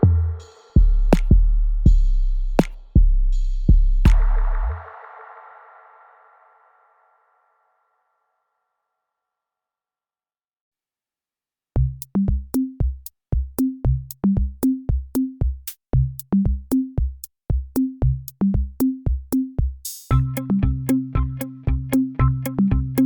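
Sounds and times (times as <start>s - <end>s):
drum-machine beat: 0.0s - 4.9s, 11.8s - 23.0s.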